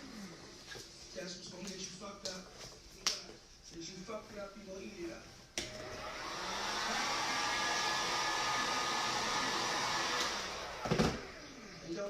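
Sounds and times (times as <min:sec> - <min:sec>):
hot-air blower fan blowing: 0:05.5 - 0:12.0.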